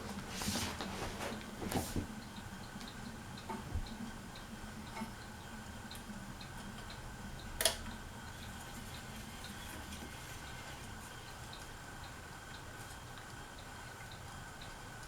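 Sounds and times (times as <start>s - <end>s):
ceiling fan motor hum: 0.0s - 15.0s
light ticking: 2.2s - 9.6s, 11.2s - 15.0s.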